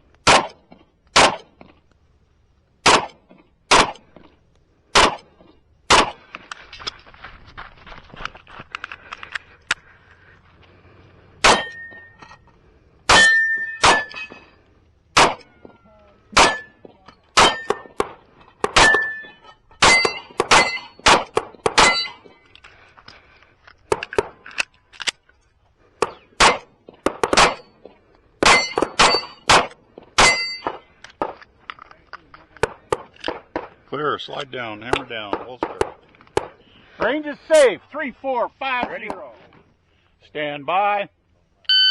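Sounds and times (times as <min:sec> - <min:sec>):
pistol shots: 0:00.2 - 0:01.6, 0:02.8 - 0:04.1, 0:04.9 - 0:05.3, 0:05.9 - 0:06.2, 0:11.4 - 0:11.8, 0:13.1 - 0:14.2, 0:15.1 - 0:15.5, 0:16.3 - 0:16.7, 0:17.3 - 0:19.2, 0:19.8 - 0:22.2, 0:26.0 - 0:27.7, 0:28.4 - 0:31.4
steel targets ringing: 0:11.5 - 0:12.2, 0:13.1 - 0:14.6, 0:16.3 - 0:16.8, 0:17.4 - 0:18.0, 0:18.8 - 0:21.2, 0:21.8 - 0:22.3, 0:28.4 - 0:29.5, 0:30.2 - 0:30.8.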